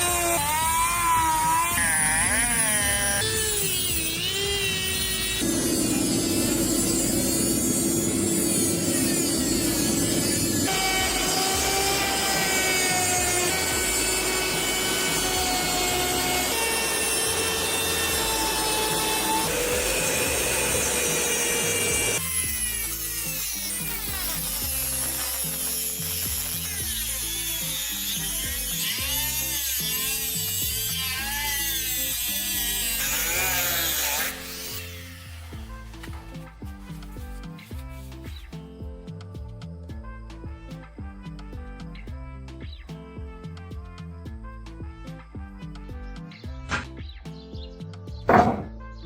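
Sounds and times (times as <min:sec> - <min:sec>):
power tools grinding steel: 0:00.0 - 0:36.8.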